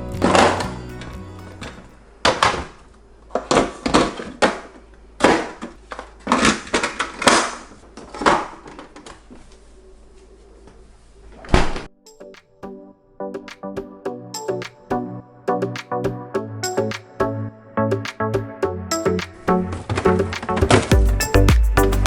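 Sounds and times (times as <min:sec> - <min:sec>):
freezer items knocking and clattering: 0:02.2 - 0:09.2.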